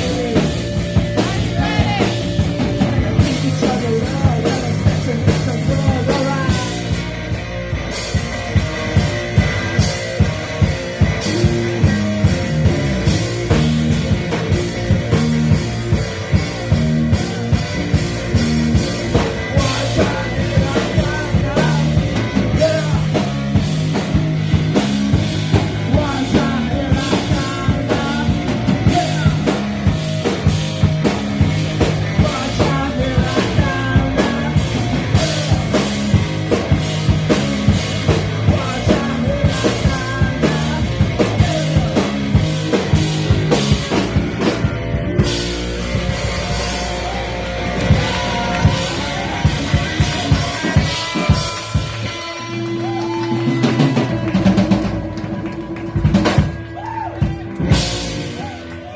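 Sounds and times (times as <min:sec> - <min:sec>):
person singing: 0:00.0 - 0:07.2, 0:19.1 - 0:23.6, 0:25.5 - 0:29.9, 0:31.8 - 0:36.2, 0:37.2 - 0:42.9
drum kit: 0:00.0 - 0:58.9
punk rock band playing live: 0:00.0 - 0:58.9.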